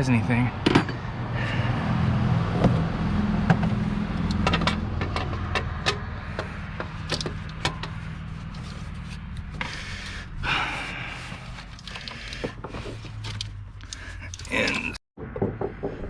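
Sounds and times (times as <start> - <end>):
sharp metal clicks and knocks: 3.5 - 9.7, 11.6 - 15.4
metal scrape: 3.7 - 14.9.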